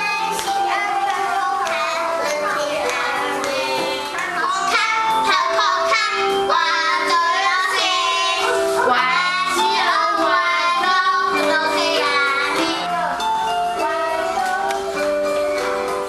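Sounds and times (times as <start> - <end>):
backing track music: 0.0 - 16.0
children singing: 0.0 - 16.0.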